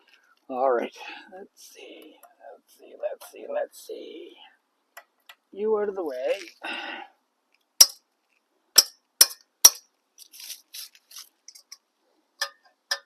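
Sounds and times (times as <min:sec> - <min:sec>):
hand tools striking metal bolts: 0:07.8 - 0:08.0, 0:08.8 - 0:09.8.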